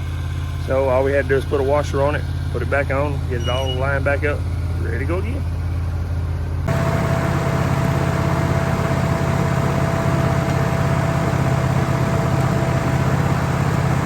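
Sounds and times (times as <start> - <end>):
high blade whine: 0.0 - 5.3
band sawmill running: 0.0 - 14.0.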